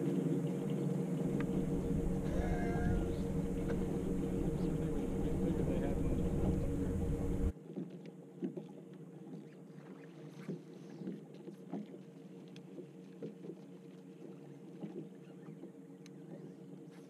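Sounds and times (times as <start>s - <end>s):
steady low hum: 0.0s - 7.5s
light taps and knocks on boat: 0.0s - 9.6s, 10.4s - 16.5s.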